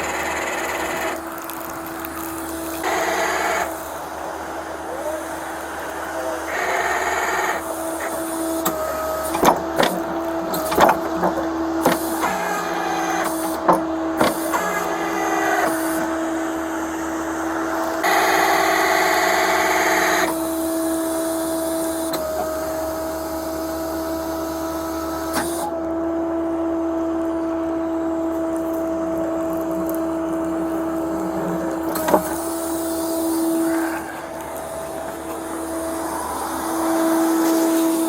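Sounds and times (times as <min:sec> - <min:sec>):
loud rushing hiss: 0:00.0 - 0:22.2, 0:30.1 - 0:38.0
tow truck engine humming: 0:00.0 - 0:38.0.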